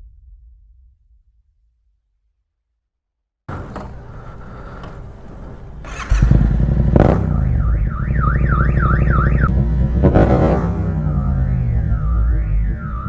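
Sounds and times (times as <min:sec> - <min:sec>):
car alarm warbling: 0:03.5 - 0:09.5, 0:10.2 - 0:13.0
motorcycle engine revving: 0:03.5 - 0:13.0.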